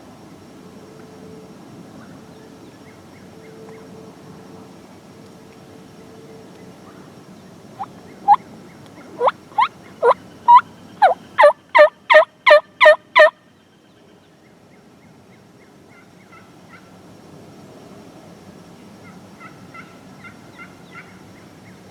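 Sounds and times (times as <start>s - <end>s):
turkey yelps: 9.1s - 13.3s.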